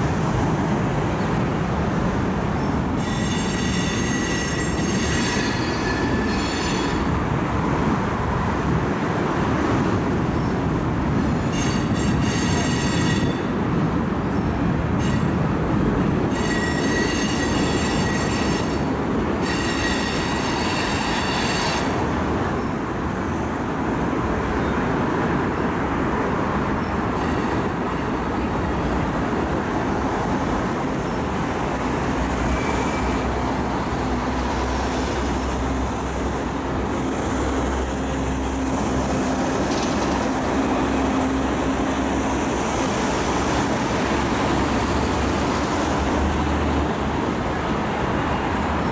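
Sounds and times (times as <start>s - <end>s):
train wheels rumbling on rail: 0.0s - 48.9s
high-pitched wheel squeal: 3.0s - 7.1s, 11.5s - 13.5s, 16.3s - 22.0s, 32.4s - 34.8s.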